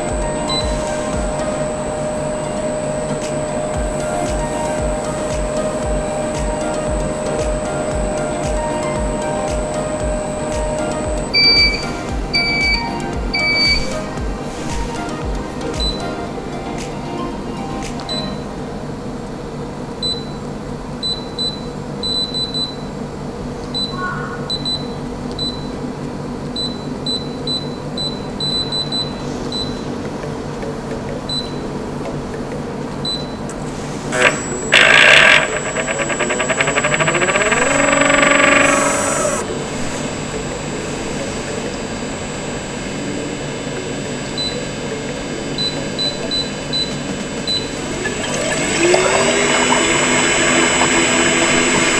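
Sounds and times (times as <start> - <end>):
machine hum: 0.0 - 20.9, 33.3 - 51.9
high whine: 0.0 - 21.0, 33.3 - 51.9.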